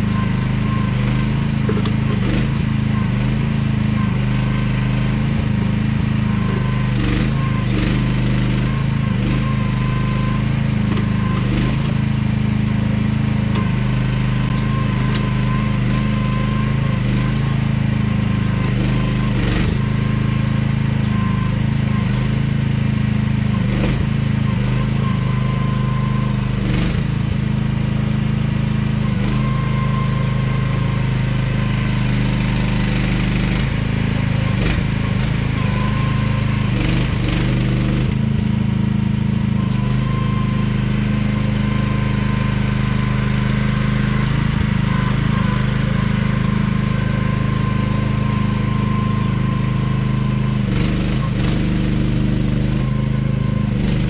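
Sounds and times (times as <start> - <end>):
small excavator engine running: 0.0 - 54.0
thin mechanical whine: 0.0 - 54.0.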